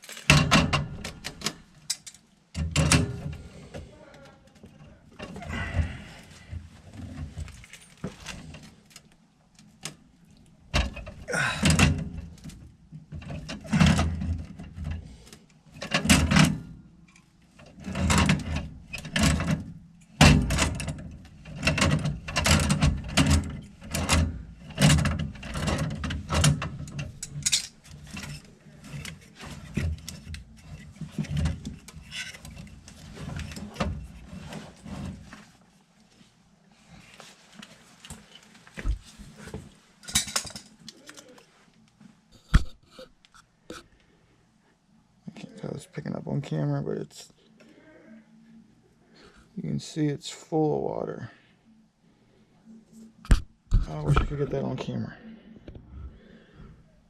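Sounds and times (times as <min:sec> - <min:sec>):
tools and metal parts clanking: 0:00.0 - 0:03.5, 0:04.6 - 0:08.9, 0:10.7 - 0:15.1, 0:15.7 - 0:35.3, 0:40.0 - 0:41.4.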